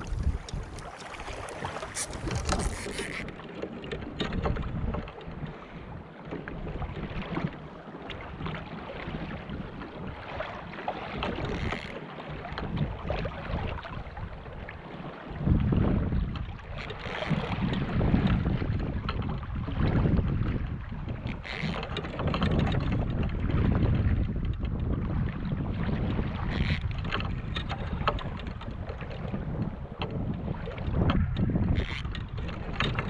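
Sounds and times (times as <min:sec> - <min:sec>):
wind buffeting microphone: 0:00.0 - 0:07.6, 0:15.3 - 0:33.0
water moving against kayak: 0:00.0 - 0:33.0.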